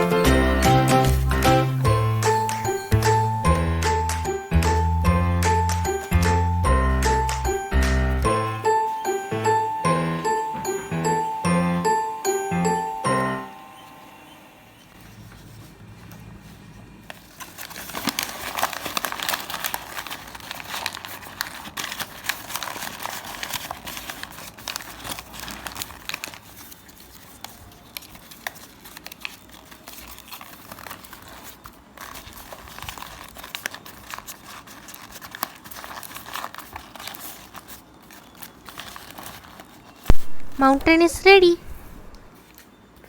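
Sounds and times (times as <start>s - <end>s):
paper crumpling by hand: 15.0s - 41.0s.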